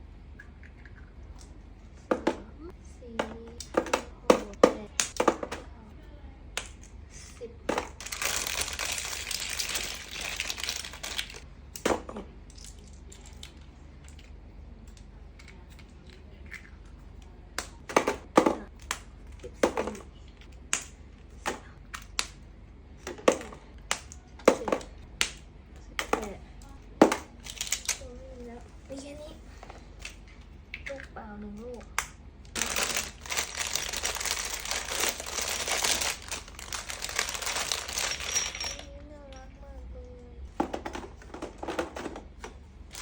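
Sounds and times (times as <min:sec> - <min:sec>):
plastic packaging crinkling: 0:07.9 - 0:11.4, 0:32.5 - 0:38.8
plastic parts clicking and knocking: 0:40.6 - 0:43.0.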